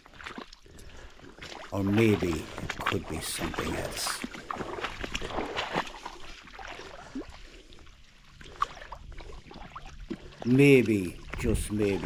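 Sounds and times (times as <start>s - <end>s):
water splashing and lapping: 0.0s - 12.0s.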